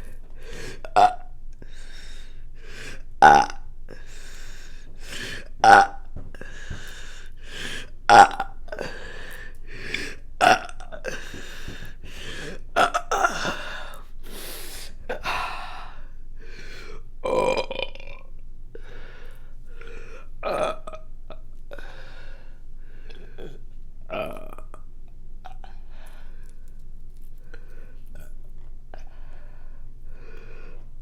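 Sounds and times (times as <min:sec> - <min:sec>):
woman burping: 0:05.6 - 0:06.1, 0:08.1 - 0:09.0, 0:10.4 - 0:11.4, 0:12.8 - 0:13.8, 0:17.2 - 0:18.3, 0:20.4 - 0:21.0.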